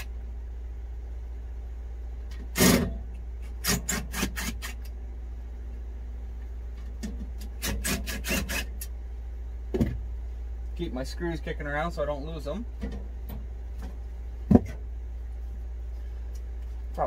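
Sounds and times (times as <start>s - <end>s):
screw scraping strokes: 3.4s - 4.9s, 7.5s - 8.9s.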